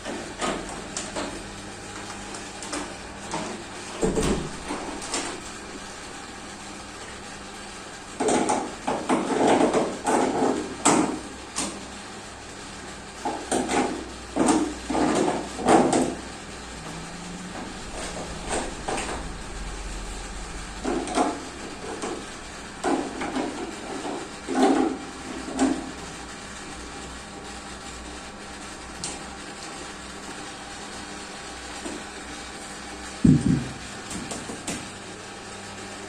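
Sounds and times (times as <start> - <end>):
wooden knocking and clattering: 33.2 - 34.4.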